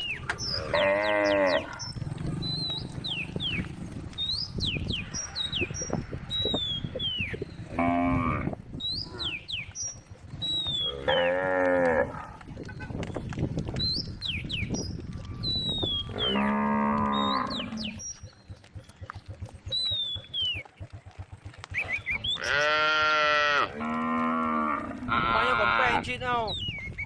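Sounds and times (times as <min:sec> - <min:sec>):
cows mooing: 0:00.0 - 0:04.2, 0:07.3 - 0:09.5, 0:10.5 - 0:12.5, 0:15.9 - 0:18.1, 0:22.2 - 0:26.1.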